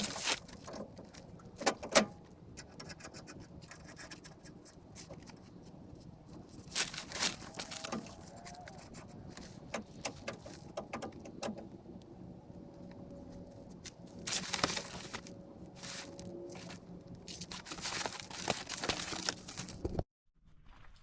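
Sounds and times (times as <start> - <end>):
tools and metal parts clicking: 0.0 - 4.2, 6.9 - 11.7.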